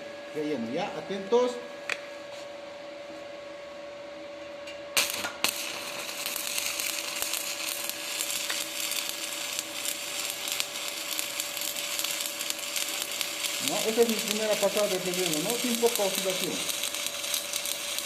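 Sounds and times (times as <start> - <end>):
welding crackling sizzle: 4.9 - 18.0
welding arc cracks: 5.0 - 18.0.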